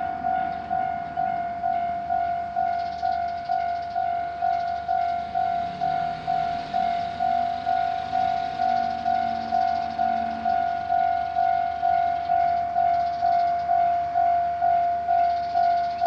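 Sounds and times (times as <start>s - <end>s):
railroad crossing bell clanging: 0.0s - 16.0s.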